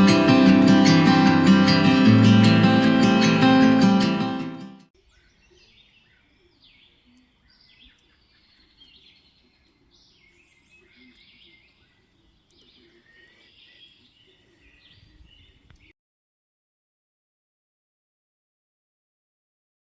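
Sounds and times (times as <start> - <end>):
faint birds chirping and trilling: 5.0 - 15.9.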